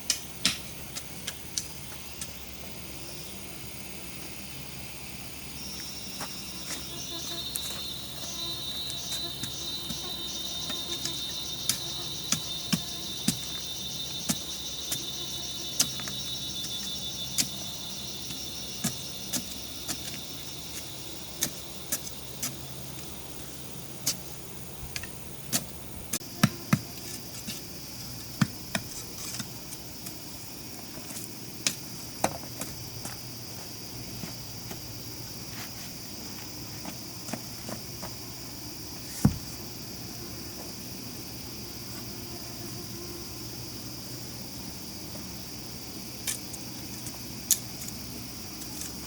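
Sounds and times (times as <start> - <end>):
insects chirring: 0.0 - 49.0.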